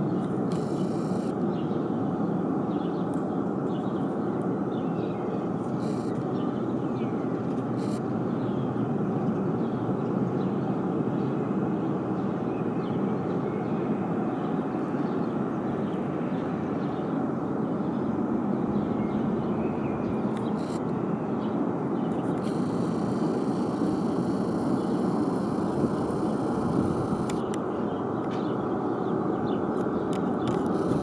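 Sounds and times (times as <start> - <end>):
distant rocket engine roar: 14.8 - 31.0.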